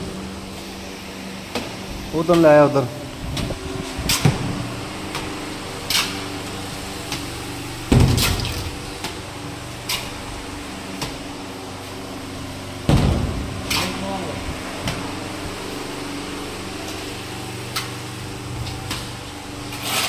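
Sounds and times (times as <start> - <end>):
low machine hum: 0.0 - 20.0
heavy thump: 12.9 - 13.6.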